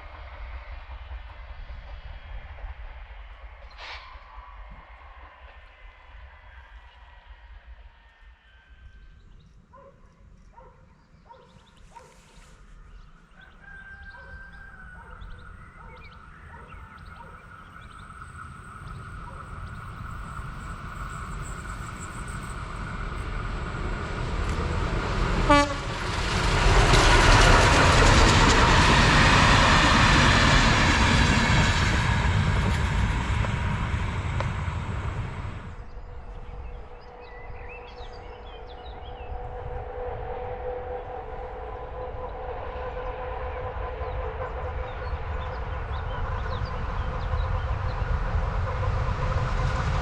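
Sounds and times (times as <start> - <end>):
train wheels rushing and rattling: 19.0 - 35.8.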